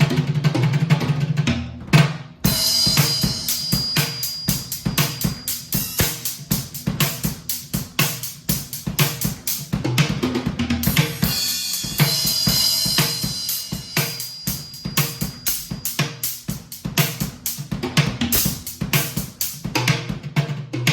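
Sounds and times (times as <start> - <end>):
drum kit groove: 0.0 - 20.9
cymbal ringing: 2.5 - 6.5, 11.3 - 15.9.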